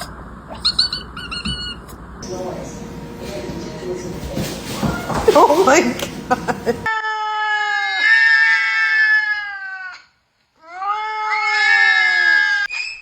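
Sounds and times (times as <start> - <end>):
cat yowling: 6.9 - 12.7.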